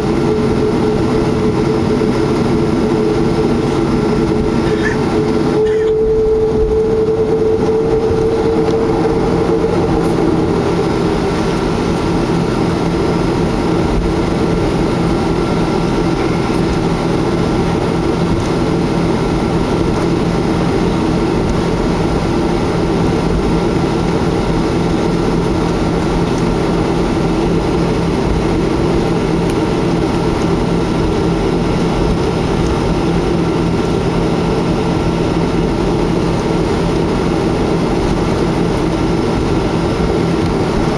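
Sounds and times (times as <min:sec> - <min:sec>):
jet engine cabin drone: 0:00.0 - 0:40.9
steady tones: 0:00.5 - 0:19.8.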